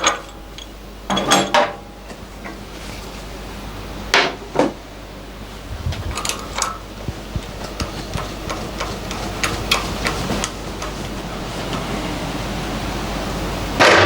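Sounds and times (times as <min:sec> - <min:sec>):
milling machine motor hum: 0:00.0 - 0:01.3, 0:05.3 - 0:13.8
cutter ticking: 0:05.7 - 0:11.4.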